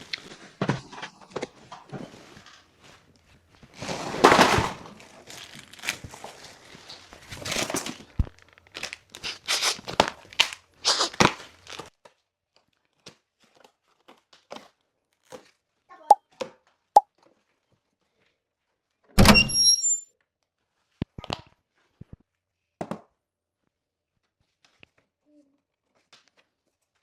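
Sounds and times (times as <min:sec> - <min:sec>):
packaging crinkling and rustling: 0:00.0 - 0:11.9
packaging tearing: 0:05.0 - 0:07.9, 0:08.7 - 0:11.9.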